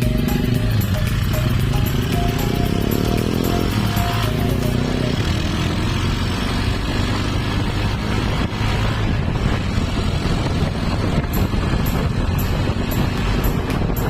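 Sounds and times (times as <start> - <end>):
motorcycle engine with loud exhaust: 0.0 - 14.0
wind buffeting microphone: 6.6 - 14.0.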